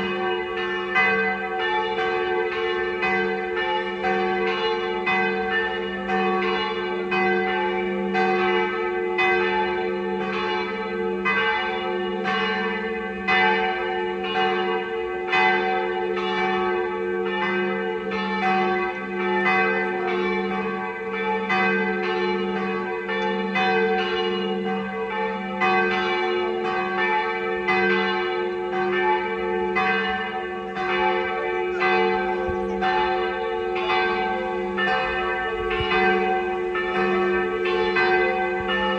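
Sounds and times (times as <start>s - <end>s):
church bells pealing: 0.0s - 38.9s.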